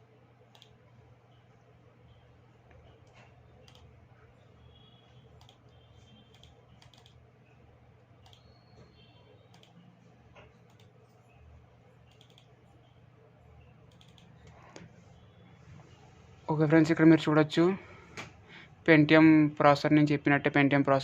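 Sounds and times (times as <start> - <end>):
computer mouse clicks: 0.5 - 1.0, 2.6 - 3.9, 5.4 - 7.2, 8.0 - 11.4, 12.0 - 12.9, 13.8 - 14.9.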